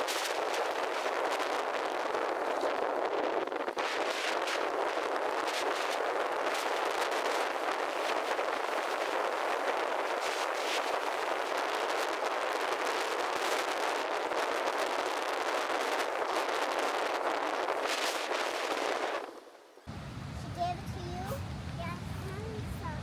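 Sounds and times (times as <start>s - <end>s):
strong sea wind: 0.0s - 23.0s
surf at shore: 17.1s - 23.0s.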